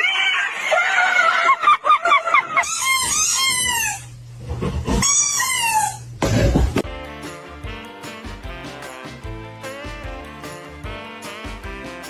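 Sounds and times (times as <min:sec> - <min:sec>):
animal calling loudly: 0:02.6 - 0:04.1.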